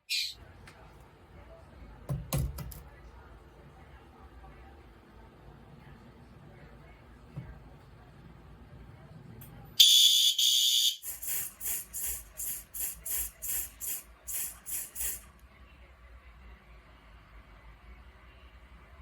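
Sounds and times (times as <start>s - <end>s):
fire alarm horn blasts: 9.8s - 11.1s.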